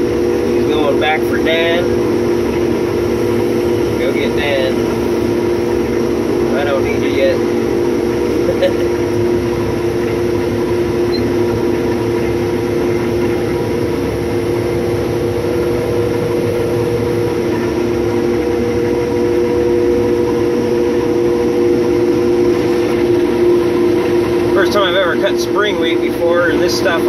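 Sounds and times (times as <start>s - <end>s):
combine harvester drone: 0.0s - 27.0s
steady humming tones: 0.0s - 27.0s.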